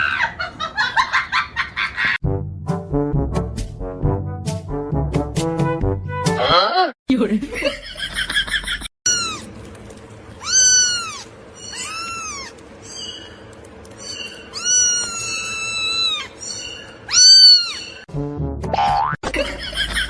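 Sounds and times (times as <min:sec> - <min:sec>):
cat meowing: 0:09.1 - 0:09.5, 0:10.4 - 0:12.6, 0:14.5 - 0:16.3, 0:17.1 - 0:18.0.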